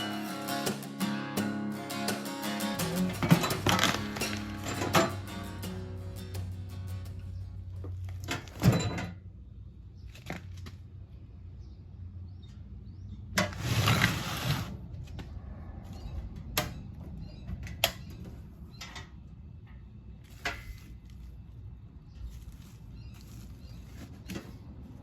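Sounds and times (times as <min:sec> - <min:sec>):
scraping rustle: 0:13.4 - 0:14.8, 0:20.2 - 0:25.0.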